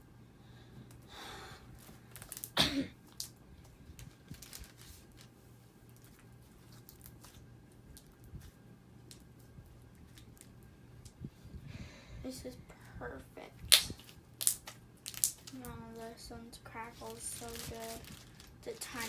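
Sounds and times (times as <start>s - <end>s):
person coughing: 2.6s - 3.0s.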